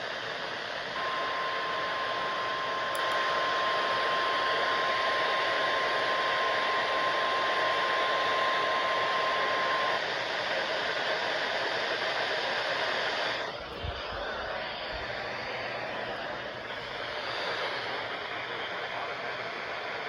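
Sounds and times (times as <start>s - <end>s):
radio static hiss: 0.0s - 20.0s
steady alarm beep: 1.0s - 2.9s.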